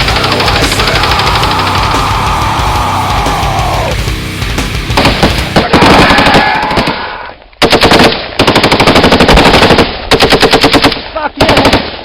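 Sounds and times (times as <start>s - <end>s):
automatic gunfire bursts: 4.9s - 6.9s, 7.6s - 12.0s.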